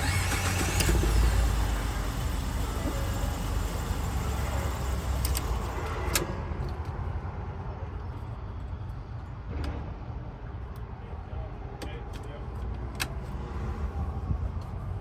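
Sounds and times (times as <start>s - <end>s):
vehicle engine running: 0.0s - 6.8s.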